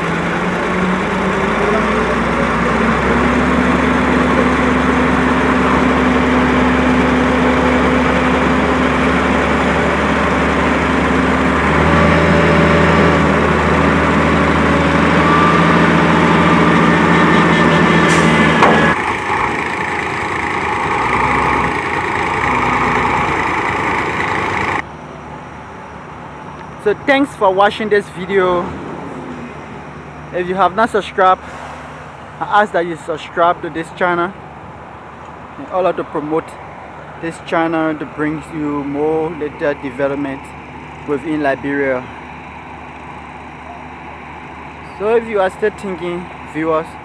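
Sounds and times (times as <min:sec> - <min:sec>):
heavy engine running: 0:00.0 - 0:47.0.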